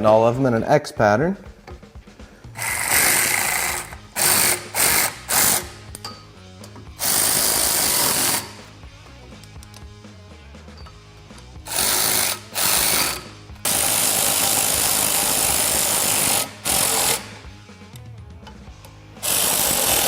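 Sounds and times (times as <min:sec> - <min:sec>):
background music: 0:00.0 - 0:20.0
power driver spinning screws: 0:02.6 - 0:06.0, 0:07.0 - 0:08.7, 0:11.7 - 0:17.4, 0:19.2 - 0:20.0.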